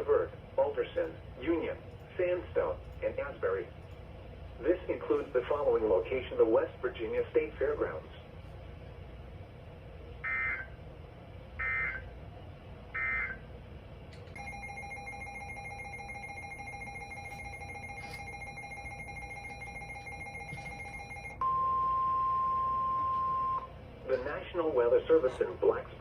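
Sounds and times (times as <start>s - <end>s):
electronic alert tone: 14.4s - 23.6s.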